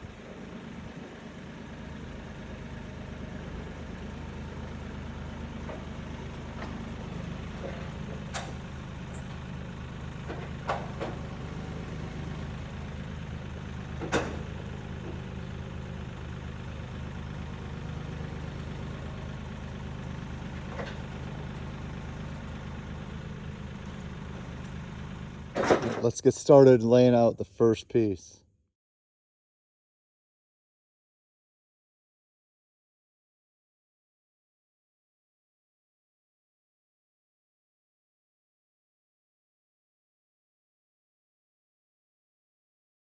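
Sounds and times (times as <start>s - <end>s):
engine idling: 0.0s - 28.1s.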